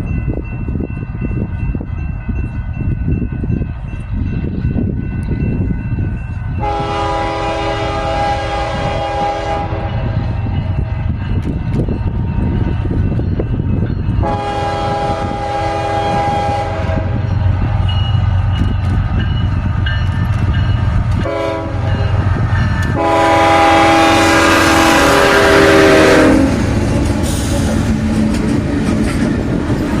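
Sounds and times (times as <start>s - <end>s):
train rumbling by: 0.0s - 30.0s
locomotive air horn: 6.6s - 10.2s, 14.2s - 17.2s, 21.2s - 22.0s, 22.9s - 26.6s.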